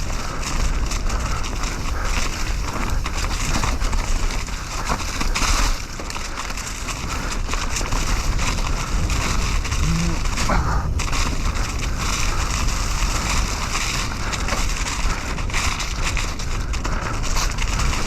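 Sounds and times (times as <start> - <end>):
bike clicks and rattles: 0.0 - 18.0
tyre roar on dirt: 0.0 - 18.0
wind on microphone: 8.0 - 18.0.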